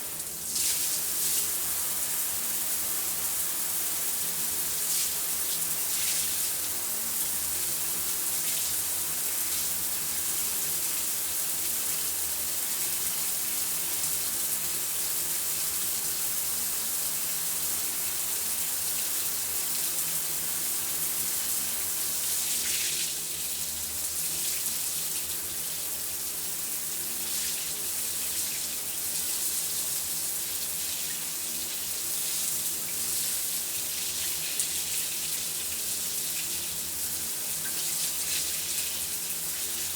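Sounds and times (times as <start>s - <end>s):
shower water spraying: 0.4s - 2.2s, 4.8s - 6.6s.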